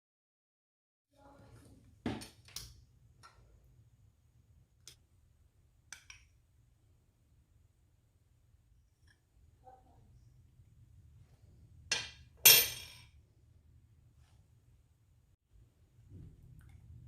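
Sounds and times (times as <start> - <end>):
faint low hum: 13.1 - 17.0.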